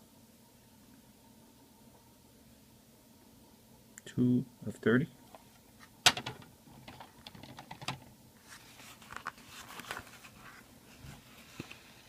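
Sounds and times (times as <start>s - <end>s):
cards rustling: 6.1s - 12.0s.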